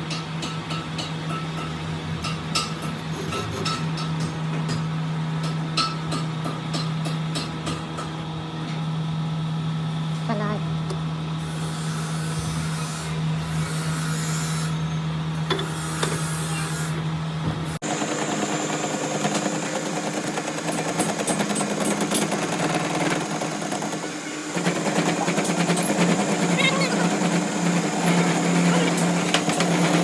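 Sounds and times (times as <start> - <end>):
workshop machinery humming: 0.0 - 30.0
machine rapid rattle: 17.8 - 30.0.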